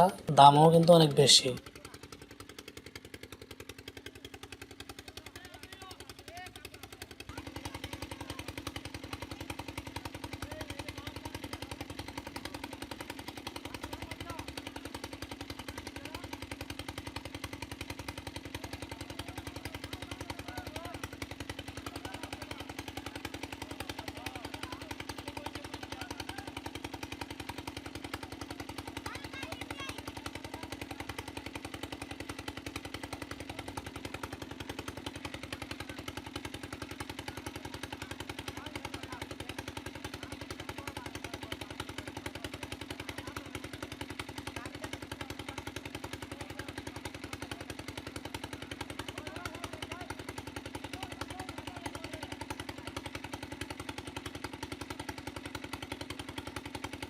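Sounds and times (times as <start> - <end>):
water pump engine running: 0.0 - 57.0.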